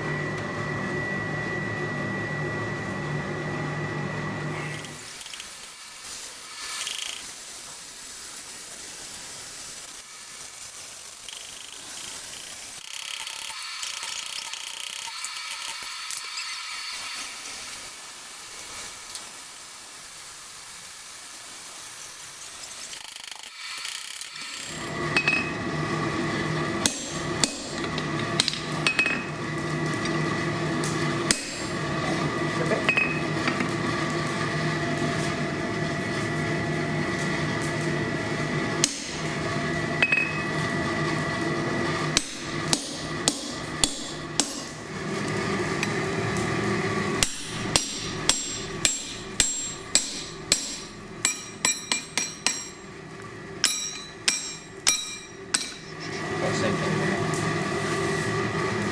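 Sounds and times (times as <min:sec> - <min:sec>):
steady hiss: 0:04.5 - 0:24.9
droning hum: 0:42.3 - 0:58.9.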